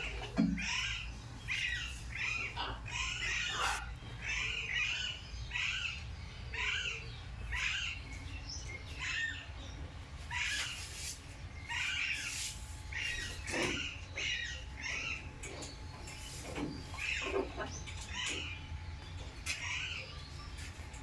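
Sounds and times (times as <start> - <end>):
parrots squawking: 0.0 - 8.0, 11.7 - 15.8, 16.9 - 18.7.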